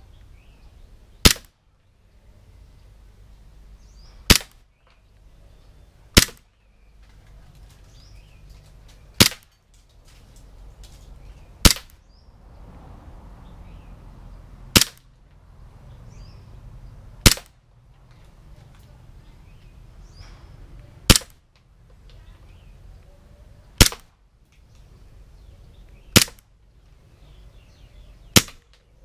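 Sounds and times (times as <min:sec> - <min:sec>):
airsoft pistol shots: 0:01.2 - 0:01.6, 0:04.2 - 0:04.6, 0:06.1 - 0:06.5, 0:09.2 - 0:09.5, 0:11.6 - 0:12.0, 0:14.7 - 0:15.1, 0:17.2 - 0:17.6, 0:21.0 - 0:21.4, 0:23.8 - 0:24.2, 0:26.1 - 0:26.5, 0:28.3 - 0:28.8.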